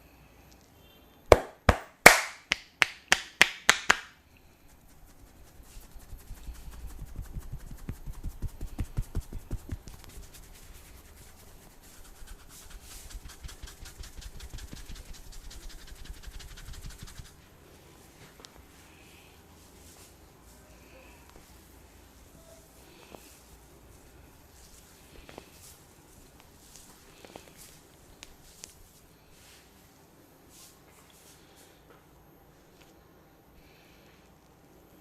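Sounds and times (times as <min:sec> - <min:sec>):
hands slapping head: 0:01.3 - 0:04.2
rapid soft tapping: 0:04.6 - 0:17.4.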